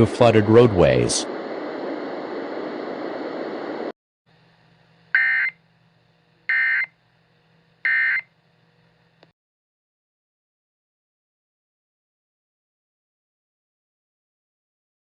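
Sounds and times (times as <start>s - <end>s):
faint hum: 0.0s - 9.3s.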